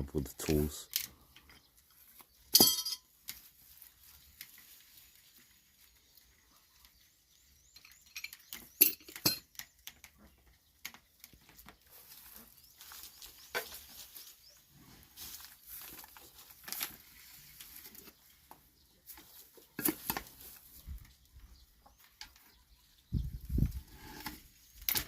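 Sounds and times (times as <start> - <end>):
metallic clinks: 2.6 - 3.1, 7.8 - 9.5.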